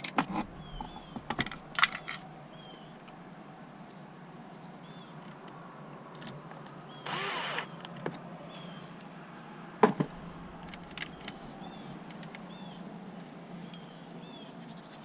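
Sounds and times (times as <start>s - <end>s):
small clicks of parts handled: 1.2s - 2.3s, 10.6s - 12.5s
cordless drill whirring: 7.1s - 7.7s.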